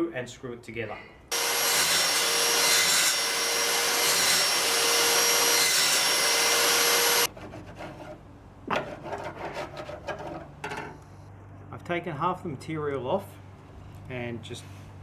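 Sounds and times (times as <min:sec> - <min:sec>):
electric router whining: 0:01.3 - 0:07.3.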